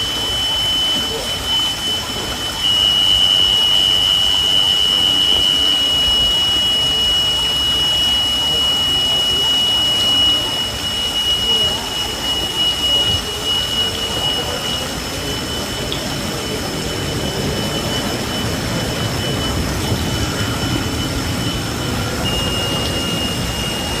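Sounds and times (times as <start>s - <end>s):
high-pitched whine: 0.0s - 24.0s.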